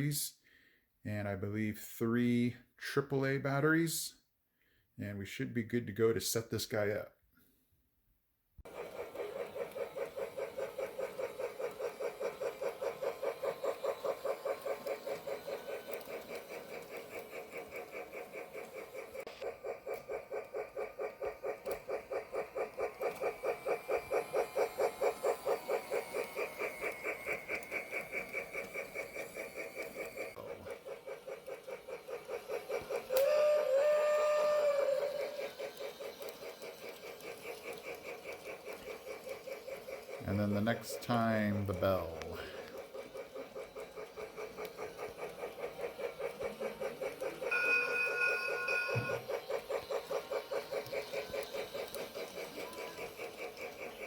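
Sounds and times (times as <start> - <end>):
toy train electronic chugging: 0.0 - 7.2, 8.6 - 54.0
electronic bell chime: 47.5 - 49.2.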